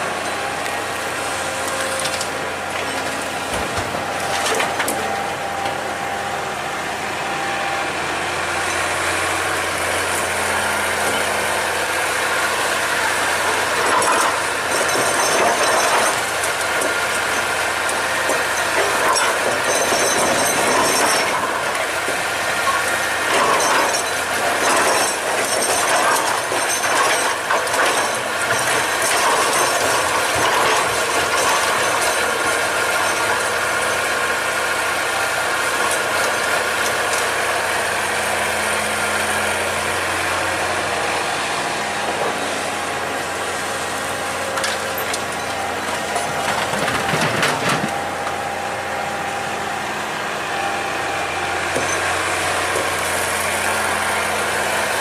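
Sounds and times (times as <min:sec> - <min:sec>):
diesel engine running: 0:00.0 - 0:55.0
metal clanks and rattles: 0:13.6 - 0:17.6, 0:18.2 - 0:21.8, 0:22.6 - 0:33.4, 0:44.6 - 0:48.1.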